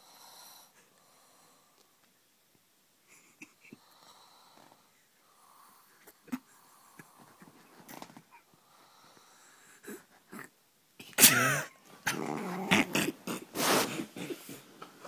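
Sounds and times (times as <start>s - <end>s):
dog growling and barking: 12.0s - 14.3s.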